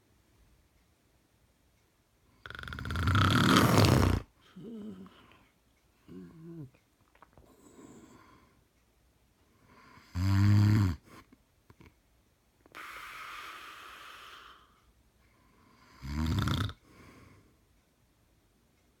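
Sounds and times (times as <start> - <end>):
loud snores: 2.4 - 5.0, 10.0 - 11.1, 15.8 - 16.9
breathy hiss: 7.4 - 8.7, 12.7 - 17.7.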